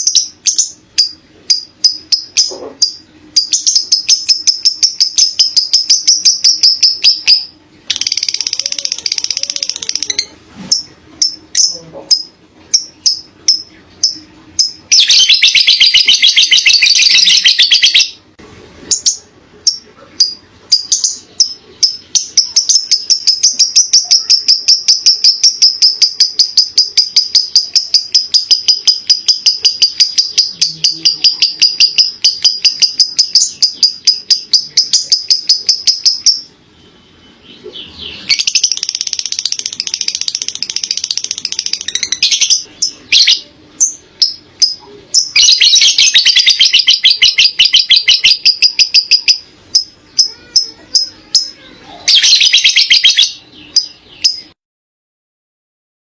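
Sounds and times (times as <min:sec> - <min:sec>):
lovebird chirping and chattering: 0:00.0 - 0:18.2, 0:18.9 - 0:54.6
lovebird rattling trill: 0:38.3 - 0:51.5.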